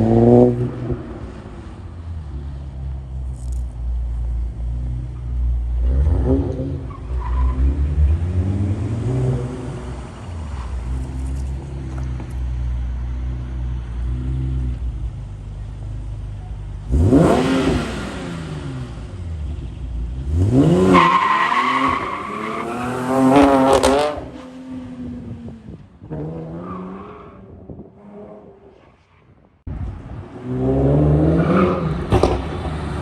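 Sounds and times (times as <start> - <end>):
car engine revving: 0.0 - 16.1, 16.8 - 28.7.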